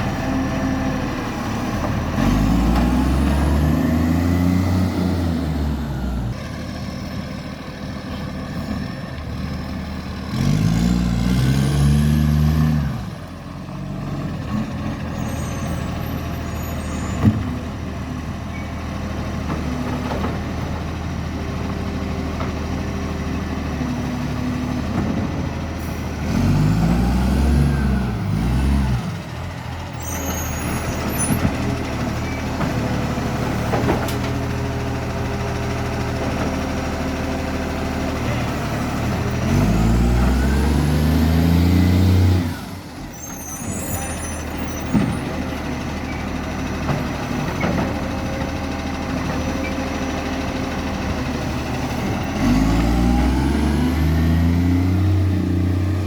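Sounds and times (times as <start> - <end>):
truck engine revving with exhaust leak: 25.8 - 29.4, 33.0 - 56.0.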